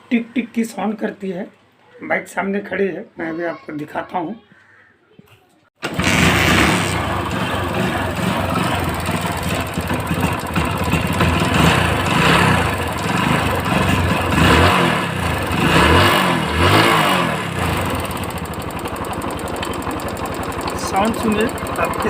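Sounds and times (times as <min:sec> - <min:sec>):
motorcycle engine revving: 0:05.8 - 0:22.0
engine ticking knock: 0:05.9 - 0:22.0.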